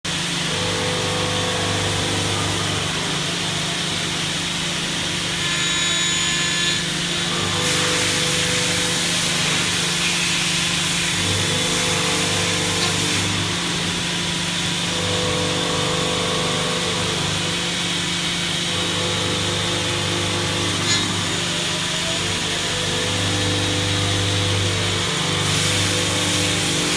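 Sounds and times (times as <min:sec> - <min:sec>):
milling machine humming: 0:00.1 - 0:26.9
milling machine cutting hiss: 0:05.2 - 0:13.9.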